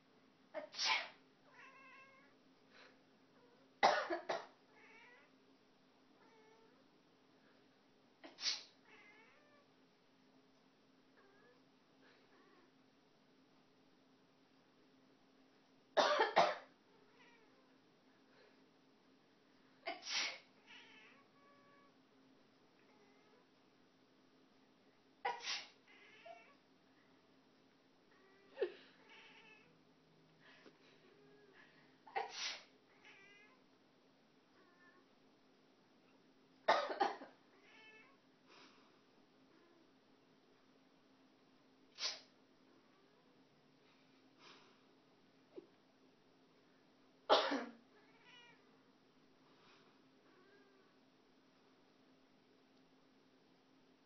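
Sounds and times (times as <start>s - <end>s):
cat meowing: 1.5s - 2.4s, 4.8s - 5.3s, 8.8s - 9.6s, 20.6s - 22.0s, 25.5s - 26.6s, 28.2s - 29.7s, 32.9s - 33.6s, 37.6s - 38.2s, 48.0s - 48.7s
person coughing or sneezing: 3.8s - 4.6s, 16.0s - 16.7s, 36.7s - 37.4s, 47.3s - 47.8s
person coughing loudly: 36.7s - 37.4s, 47.3s - 47.8s.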